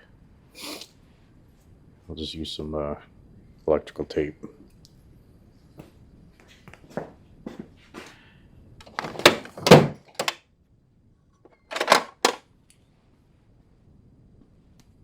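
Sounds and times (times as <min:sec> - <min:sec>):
knocks and rasps on wiring: 0:11.7 - 0:12.4.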